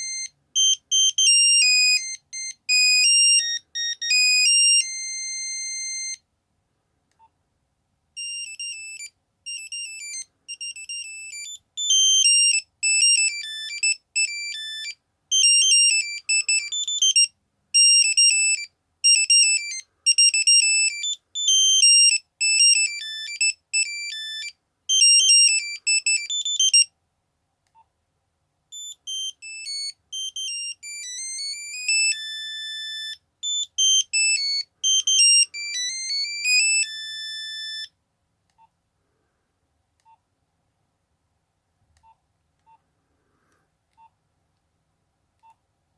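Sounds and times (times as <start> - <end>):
monophonic ringtone melody: 0.0 - 6.2, 8.2 - 26.9, 28.8 - 37.9.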